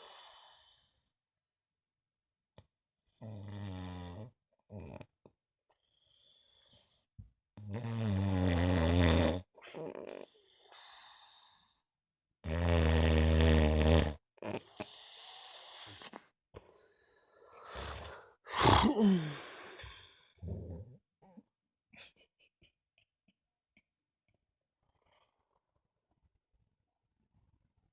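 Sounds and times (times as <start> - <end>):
heavy snoring: 3.2 - 5.0, 7.6 - 11.8, 12.4 - 16.1, 17.1 - 19.8.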